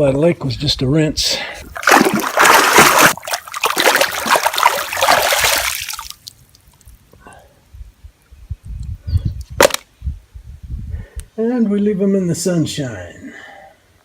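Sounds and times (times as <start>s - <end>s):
water splashing and sloshing: 1.6s - 7.1s.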